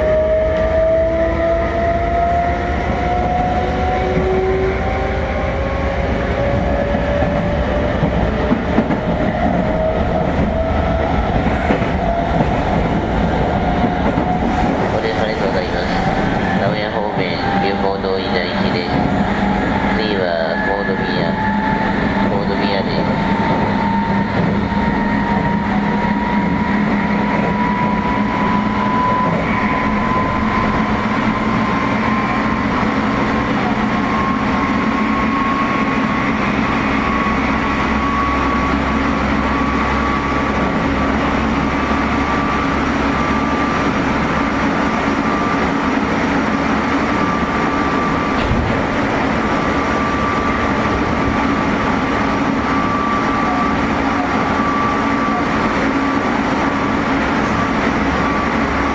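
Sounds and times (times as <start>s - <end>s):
electric train motor whine: 23.4s - 58.9s.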